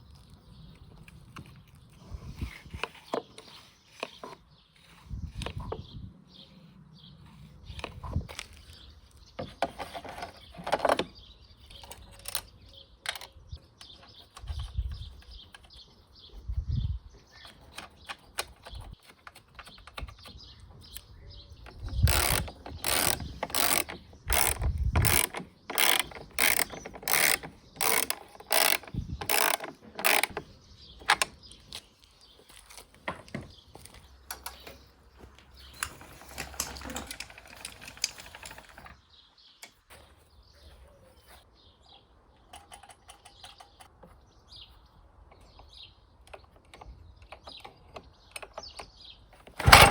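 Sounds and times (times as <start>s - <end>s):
ratcheting clicks: 21.6s - 31.8s.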